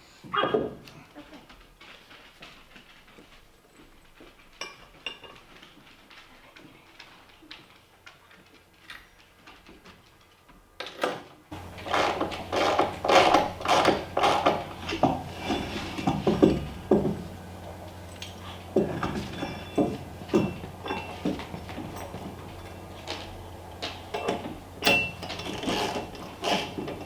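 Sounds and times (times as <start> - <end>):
hard objects knocking and clattering: 11.5 - 27.0
steady low hum: 11.5 - 27.0.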